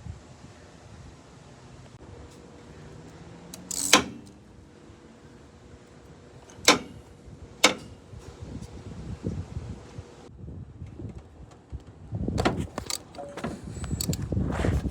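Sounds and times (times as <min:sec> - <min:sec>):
sharp knocks: 0:06.4 - 0:08.0.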